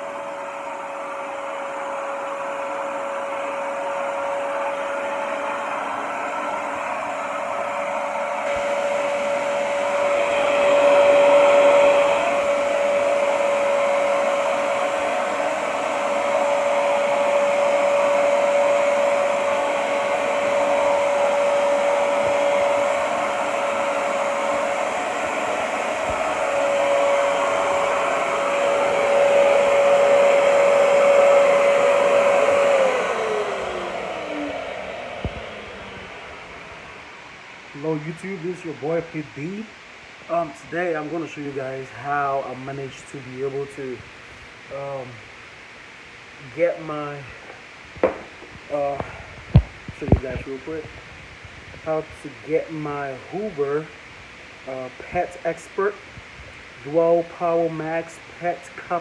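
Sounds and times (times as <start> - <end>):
carpet cleaner motor whine: 0.0 - 38.1, 47.4 - 55.1
rush of air: 8.4 - 37.8.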